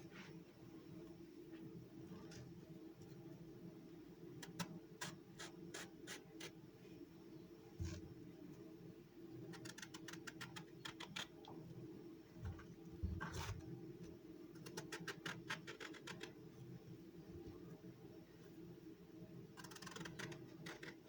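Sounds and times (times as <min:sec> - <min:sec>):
faint steady hum: 0:00.0 - 0:21.0
light tapping and scratching clicks: 0:14.6 - 0:16.4, 0:19.6 - 0:21.0.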